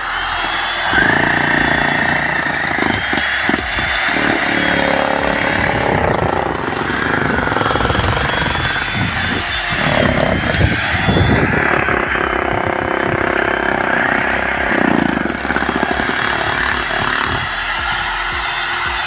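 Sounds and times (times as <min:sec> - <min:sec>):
demolition hammer breaking concrete: 0:00.9 - 0:08.3.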